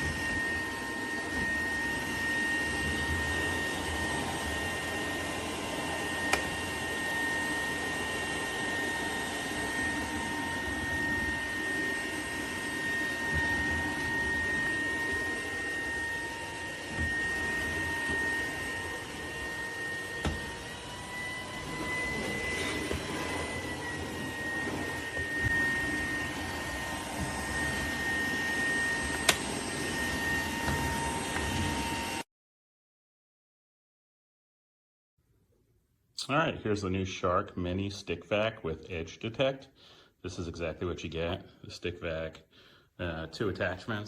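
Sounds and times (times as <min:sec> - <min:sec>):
stick vacuum motor whine: 0:00.0 - 0:32.2.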